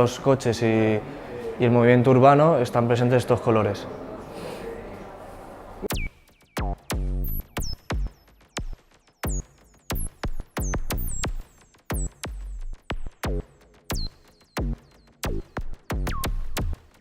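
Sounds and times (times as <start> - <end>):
choppy synthesizer hits: 5.9 - 17.0
deep bass thumps: 5.9 - 17.0.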